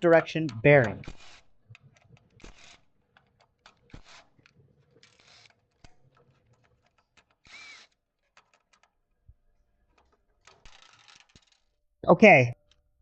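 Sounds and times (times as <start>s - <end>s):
faint tool clicks: 0.2s - 9.0s.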